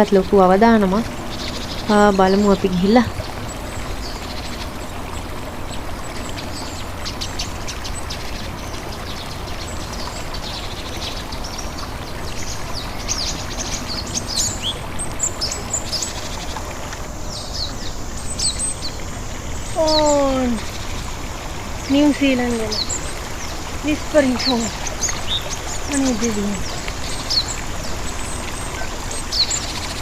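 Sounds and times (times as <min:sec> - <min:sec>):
trickling stream: 0:00.0 - 0:30.0.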